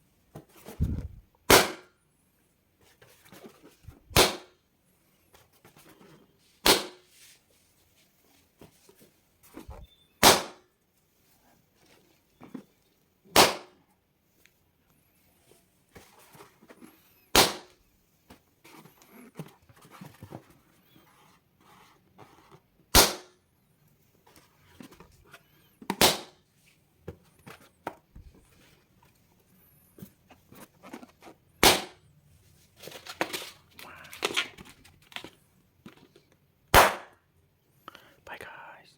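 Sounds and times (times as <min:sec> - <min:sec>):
rustling and handling noises: 0:00.0 - 0:01.4, 0:02.2 - 0:13.3, 0:13.9 - 0:22.9, 0:23.6 - 0:36.7
balloons popping: 0:00.8 - 0:01.9, 0:04.1 - 0:04.6, 0:06.6 - 0:07.1, 0:10.2 - 0:10.6, 0:17.3 - 0:17.8, 0:22.9 - 0:23.4, 0:25.9 - 0:26.4, 0:31.6 - 0:32.0, 0:36.7 - 0:37.2.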